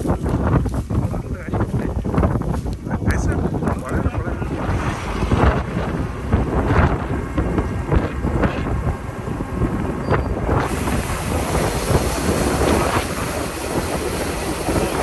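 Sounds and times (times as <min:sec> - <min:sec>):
combine harvester rumble: 0:00.0 - 0:15.0
grain rushing hiss: 0:10.6 - 0:15.0.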